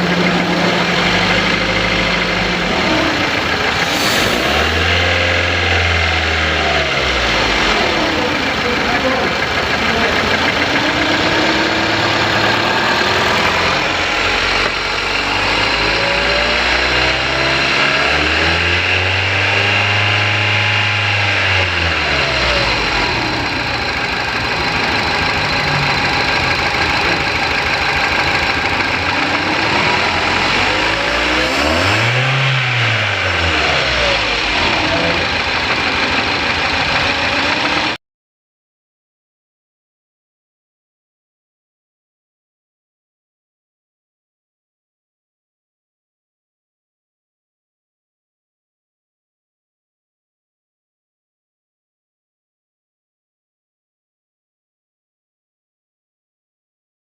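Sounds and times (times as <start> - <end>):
misfiring engine idling and revving: 0.0 - 38.0.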